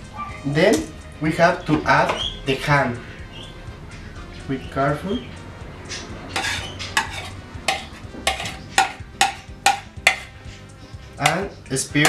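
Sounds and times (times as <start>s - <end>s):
spoon scraping and clinking a pot: 5.9s - 10.4s, 11.1s - 11.6s.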